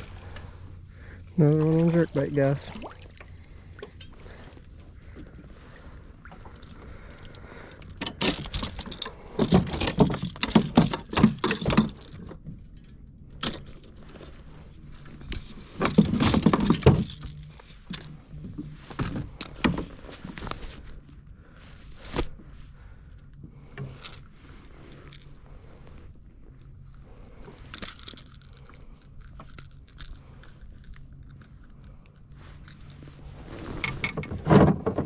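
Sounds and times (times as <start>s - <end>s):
water splashing: 1.4s - 3.6s
knocking and rattling in a kayak: 7.6s - 21.1s, 33.7s - 35.0s.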